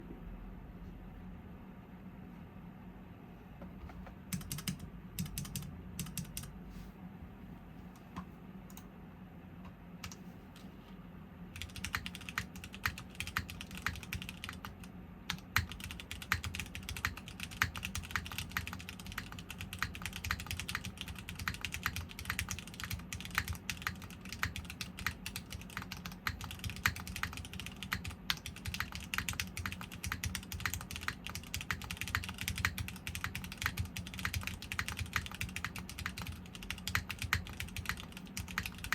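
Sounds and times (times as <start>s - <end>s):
mechanical keyboard typing: 4.3s - 6.5s, 11.6s - 38.9s.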